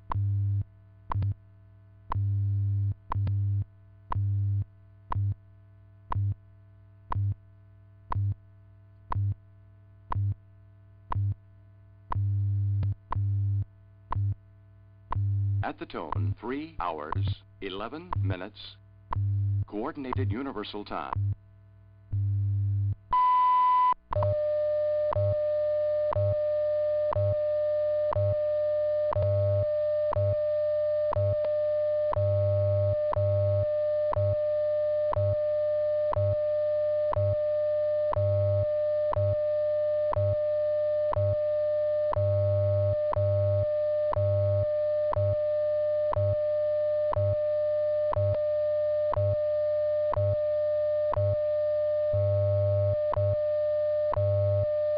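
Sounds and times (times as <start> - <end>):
low pulsing time-code hum: 0.0 - 54.9
steady audio tone: 0.0 - 54.9
seconds tick: 5.1 - 5.4, 7.1 - 7.4, 9.1 - 9.4, 10.1 - 10.4, 11.1 - 11.4, 12.1 - 13.3, 14.1 - 14.4, 15.1 - 15.3, 18.0 - 18.4, 19.1 - 19.3.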